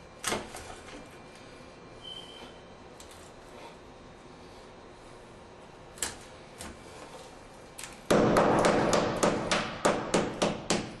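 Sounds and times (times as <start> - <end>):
hammer striking chisel: 8.1 - 11.0.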